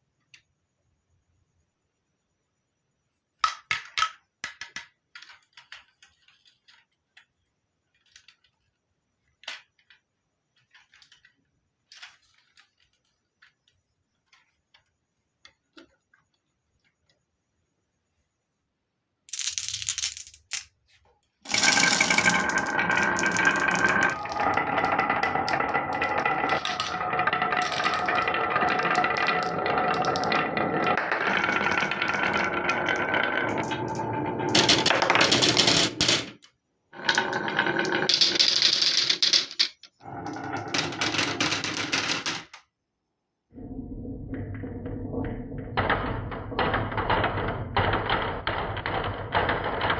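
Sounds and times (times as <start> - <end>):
marbles rolling down wooden run: 19.3 - 20.8, 21.4 - 36.4, 37.0 - 42.7, 43.6 - 49.9.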